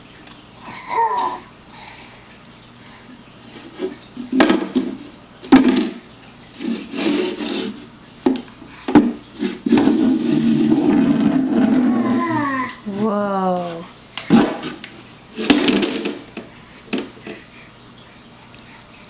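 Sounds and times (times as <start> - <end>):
plastic containers knocking: 4.4 - 6.0.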